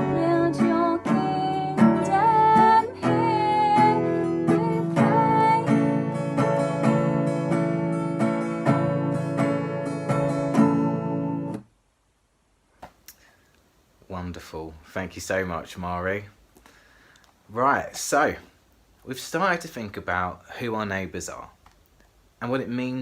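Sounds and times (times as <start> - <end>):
person singing: 0.0 - 6.1
strummed acoustic guitar: 0.0 - 11.6.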